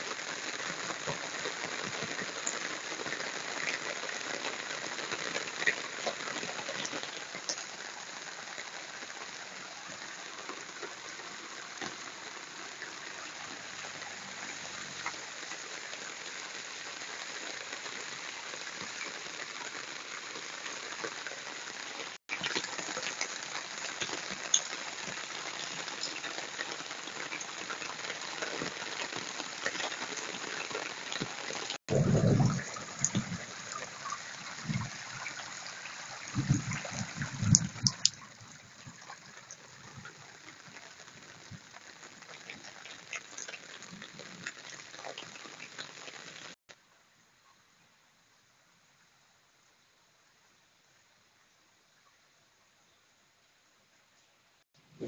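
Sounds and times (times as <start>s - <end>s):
rain hiss: 0.0s - 46.6s
drops ticking: 36.5s - 38.3s.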